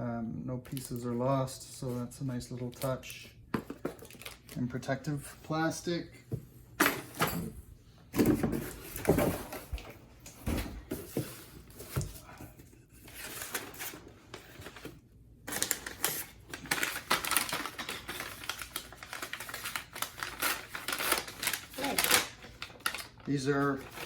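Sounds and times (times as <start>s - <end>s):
plastic packaging crinkling: 3.9s - 4.7s, 15.5s - 24.0s.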